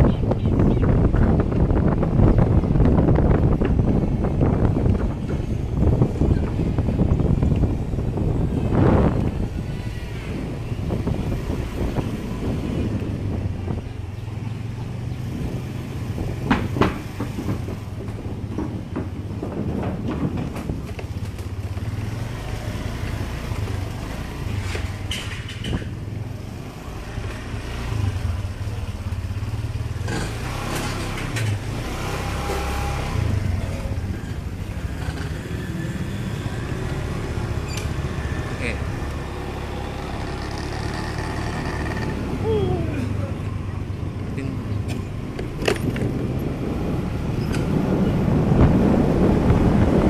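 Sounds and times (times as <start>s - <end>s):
engine humming: 0.0s - 50.0s
knocks and clatter: 16.3s - 22.0s, 24.6s - 26.0s.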